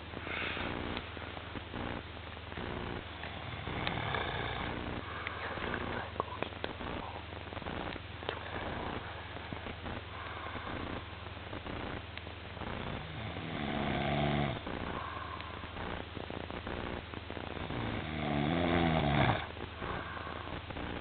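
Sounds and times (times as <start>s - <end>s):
quiet breathing: 0.0s - 1.4s, 3.0s - 12.0s, 12.6s - 21.0s
low steady hum: 0.0s - 21.0s
person snoring: 3.2s - 6.2s, 8.3s - 11.0s, 12.8s - 15.5s, 17.6s - 20.6s.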